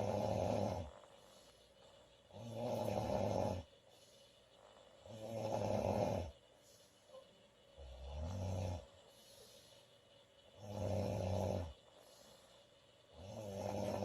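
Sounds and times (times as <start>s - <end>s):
woman snoring: 0.0s - 1.4s, 2.3s - 3.7s, 5.0s - 6.4s, 7.8s - 9.1s, 10.6s - 11.8s, 13.1s - 14.0s.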